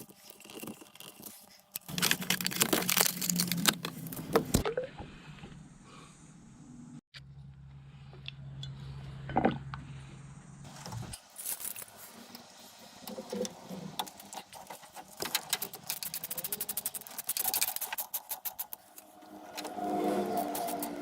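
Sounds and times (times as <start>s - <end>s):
rapid mechanical clicking: 13.3s - 19.7s.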